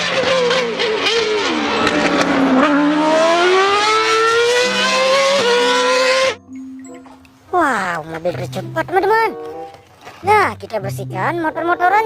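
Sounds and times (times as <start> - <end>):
race car engine at high revs: 0.0 - 6.4.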